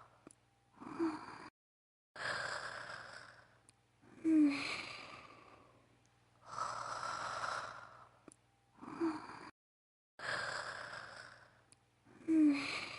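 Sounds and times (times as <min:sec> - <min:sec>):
woman imitating snoring: 0:00.8 - 0:01.5, 0:02.2 - 0:03.5, 0:08.8 - 0:09.5, 0:10.2 - 0:11.6, 0:12.2 - 0:12.9.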